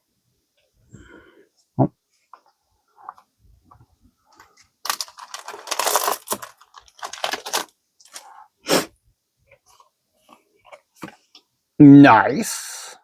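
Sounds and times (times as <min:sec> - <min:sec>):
trading cards rustling: 0:04.3 - 0:08.4.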